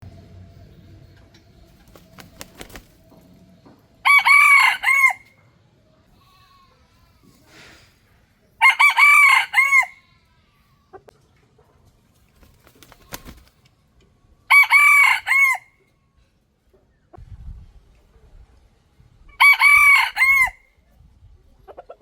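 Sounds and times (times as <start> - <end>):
rooster crowing: 4.0 - 5.4, 8.6 - 10.0, 14.5 - 15.7, 19.4 - 20.7.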